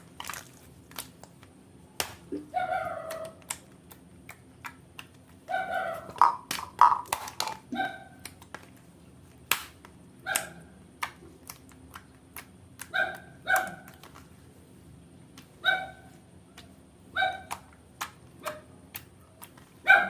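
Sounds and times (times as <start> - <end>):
slime clicking and popping: 3.1 - 5.4, 6.1 - 8.6, 9.4 - 9.8.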